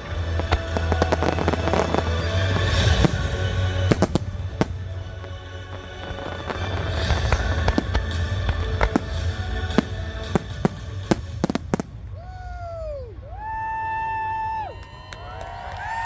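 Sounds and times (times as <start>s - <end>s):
fireworks bangs: 0.0s - 15.0s
whistling firework tones: 0.0s - 15.8s.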